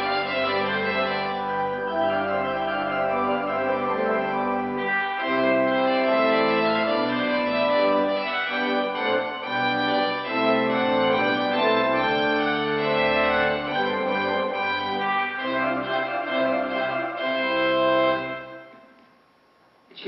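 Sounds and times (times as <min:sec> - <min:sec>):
organ playing a melody over chords: 0:00.0 - 0:18.9.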